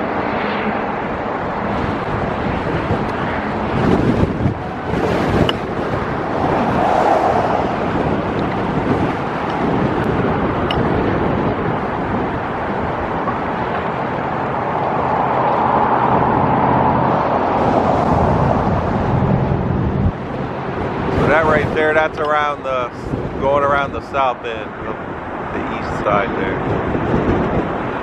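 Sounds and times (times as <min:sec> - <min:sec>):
low engine hum: 0:00.0 - 0:28.0
wind buffeting microphone: 0:00.0 - 0:28.0.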